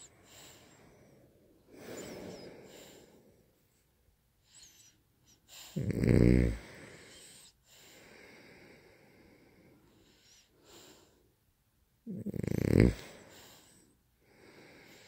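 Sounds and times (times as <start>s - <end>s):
quiet breathing: 0.0s - 11.4s, 12.9s - 15.0s
loud snore: 5.7s - 6.7s, 12.1s - 13.2s.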